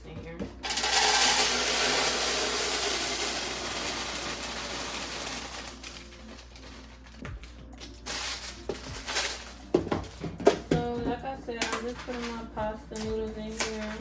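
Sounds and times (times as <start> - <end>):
dry food pouring into container: 0.6 - 7.0.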